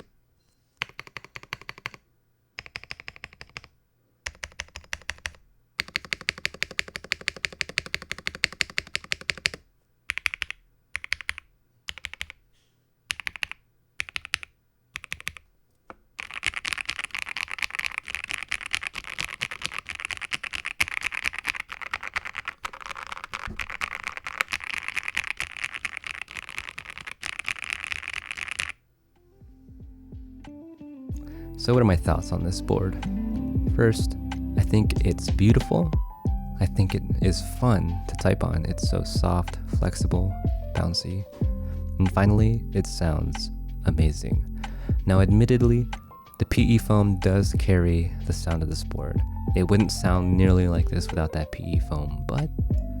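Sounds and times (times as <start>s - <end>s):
typing on mechanical keyboard: 0.8s - 2.0s, 2.6s - 12.4s, 13.1s - 15.4s, 16.2s - 28.8s.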